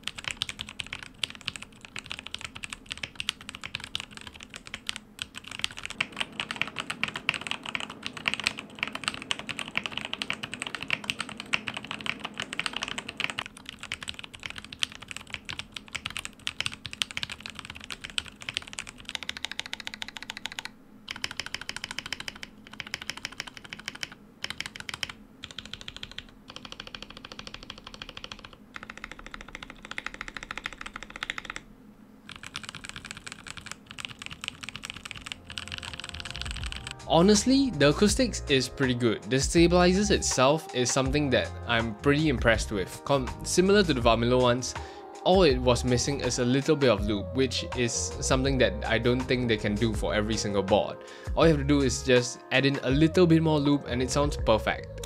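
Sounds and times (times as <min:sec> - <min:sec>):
fast typing on mechanical keyboard: 0:00.0 - 0:31.6, 0:32.2 - 0:37.0.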